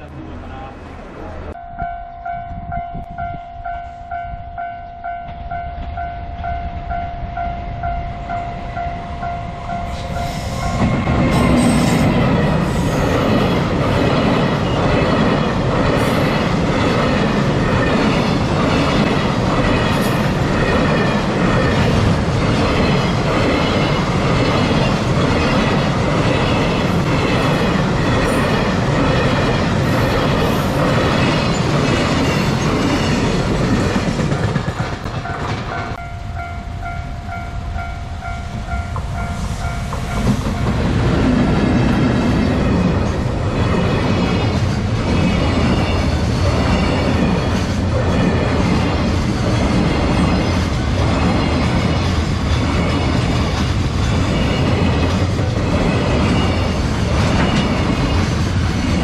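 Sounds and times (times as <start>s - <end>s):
level-crossing bell dinging: 1.5s - 10.9s
train wheels clattering over rail joints: 12.0s - 36.0s, 44.0s - 59.0s.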